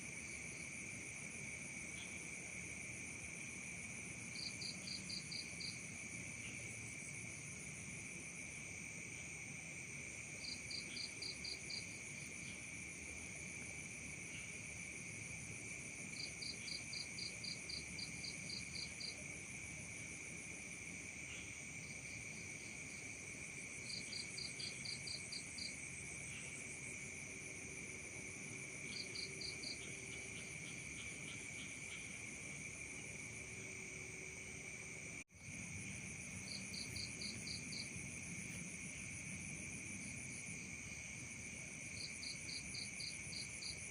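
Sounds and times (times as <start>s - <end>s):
nearby cricket chirping: 0.1s - 43.9s
insects trilling: 10.4s - 43.9s.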